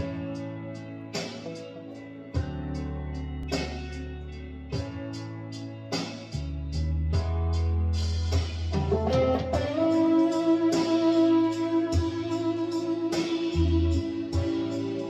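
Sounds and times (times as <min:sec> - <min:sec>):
electric guitar notes: 0:08.8 - 0:15.0.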